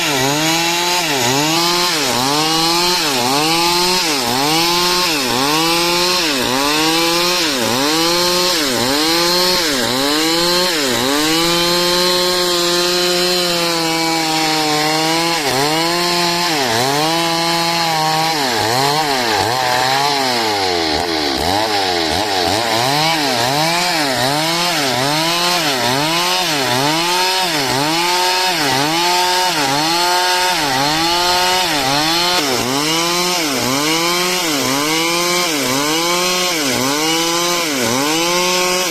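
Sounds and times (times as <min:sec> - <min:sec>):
chainsaw cutting wood: 0:00.0 - 0:38.9.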